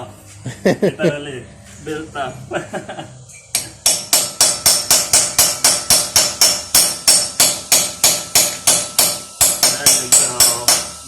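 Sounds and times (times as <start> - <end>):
hammer blows on metal: 3.5 - 11.0.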